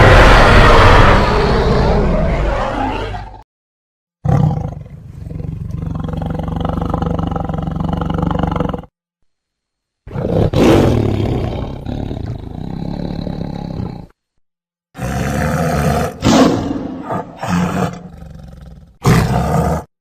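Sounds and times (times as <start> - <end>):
dinosaur roars and growls: 0.0 - 3.4, 10.1 - 14.2, 15.0 - 19.9.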